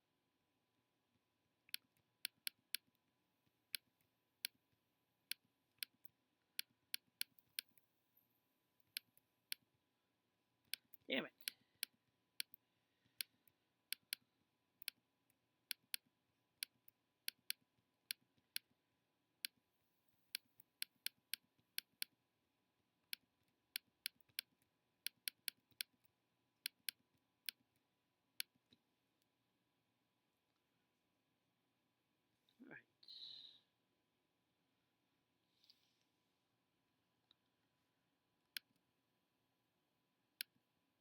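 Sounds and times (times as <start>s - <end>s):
computer mouse clicking: 1.7s - 3.0s, 5.3s - 7.8s, 10.6s - 15.0s, 15.6s - 18.7s, 20.3s - 22.2s, 23.1s - 28.8s.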